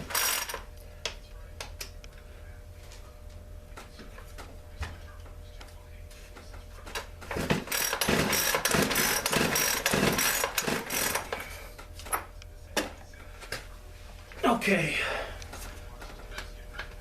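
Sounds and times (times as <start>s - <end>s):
chainsaw pull-starter rasping: 0.0s - 0.6s, 7.4s - 11.4s.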